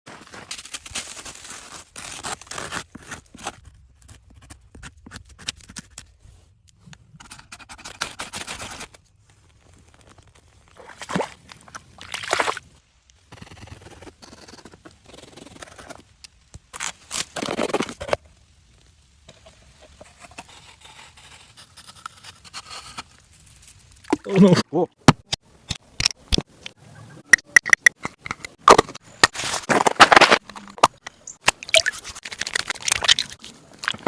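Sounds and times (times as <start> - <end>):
scraping and crunching: 0.1 - 6.2, 27.9 - 34.0.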